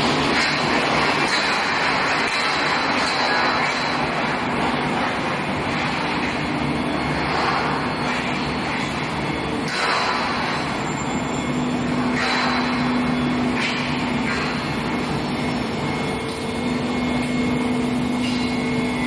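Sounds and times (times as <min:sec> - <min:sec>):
industrial machinery noise: 0:00.0 - 0:19.0.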